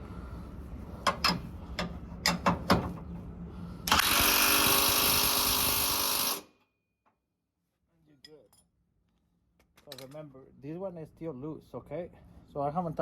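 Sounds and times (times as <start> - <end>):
power tool running: 3.9 - 6.6.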